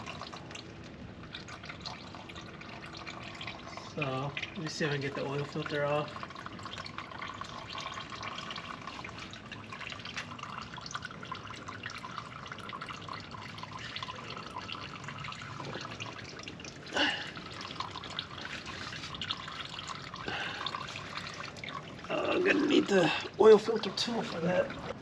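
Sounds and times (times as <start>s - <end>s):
oil dripping into a pan: 0.0s - 25.0s.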